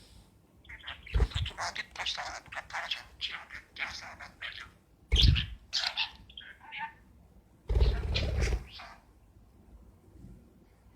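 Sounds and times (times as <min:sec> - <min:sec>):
talking bird mimicking and chirping: 0:00.7 - 0:07.0.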